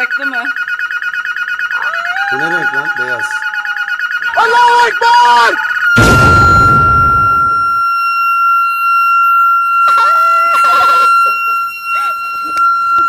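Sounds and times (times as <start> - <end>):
high-pitched electronic alarm tone: 0.0 - 13.0
person crying out: 1.8 - 4.0, 9.9 - 11.3.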